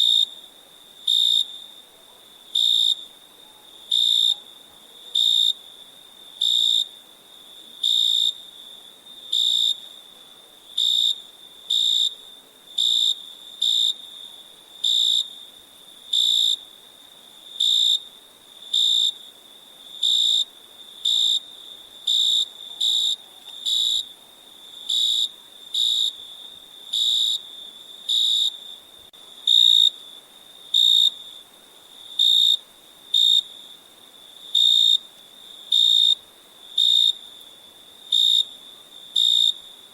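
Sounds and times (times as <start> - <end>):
faint cricket trill: 0.0 - 39.9
loud cricket chirping: 2.4 - 39.9.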